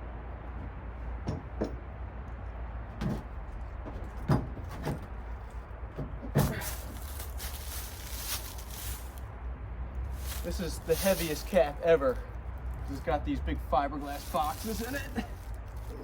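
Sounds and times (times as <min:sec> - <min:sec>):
hollow clunks and knocks: 0:00.6 - 0:01.9, 0:03.0 - 0:07.0
scraping: 0:06.4 - 0:09.2, 0:14.0 - 0:16.0.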